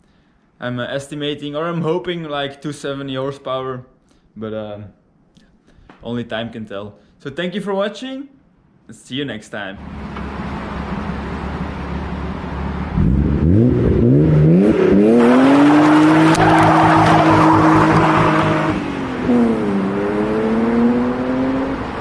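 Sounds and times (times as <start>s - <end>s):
car engine accelerating: 9.8s - 22.0s.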